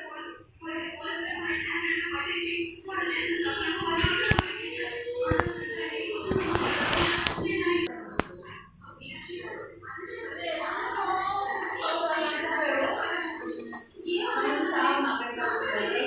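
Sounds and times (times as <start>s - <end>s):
high-pitched electronic buzzer: 0.0s - 16.0s.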